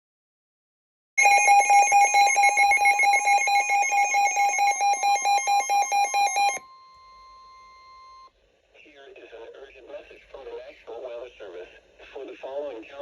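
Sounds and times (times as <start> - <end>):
faint steady warning tone: 1.2 - 8.3
warbling electronic alarm beep: 1.2 - 8.3.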